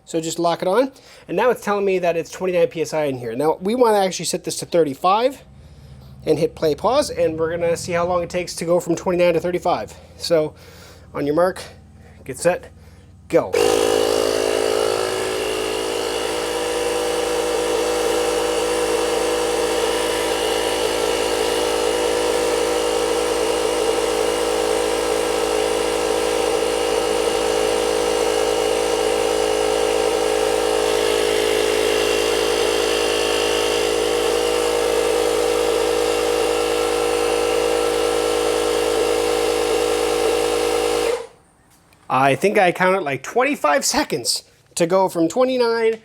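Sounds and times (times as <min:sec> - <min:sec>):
air compressor motor drone: 0:05.4 - 0:41.5.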